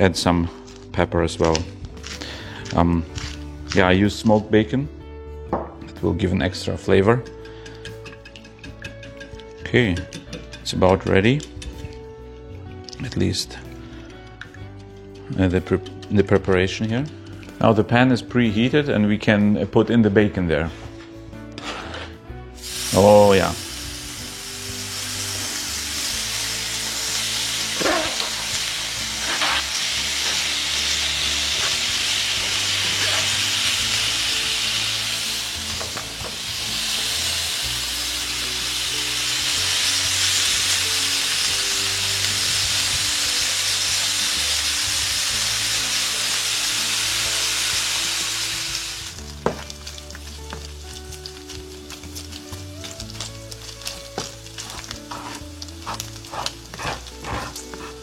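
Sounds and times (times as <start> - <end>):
bacon sizzling in a pan: 22.6 - 58.0.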